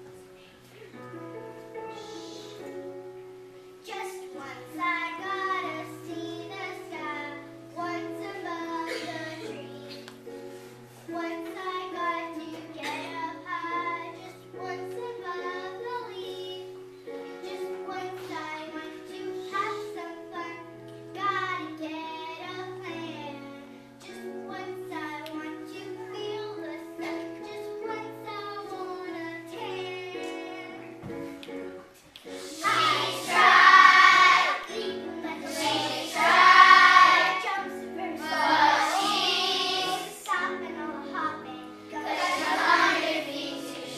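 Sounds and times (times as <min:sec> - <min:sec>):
instrumental accompaniment: 0:00.0 - 0:43.9
children singing: 0:32.4 - 0:40.6, 0:41.9 - 0:43.9.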